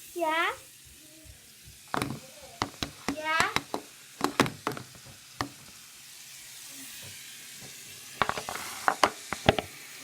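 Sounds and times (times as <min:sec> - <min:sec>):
water running from tap: 0:00.0 - 0:10.0
sharp clicks and knocks: 0:01.9 - 0:05.6.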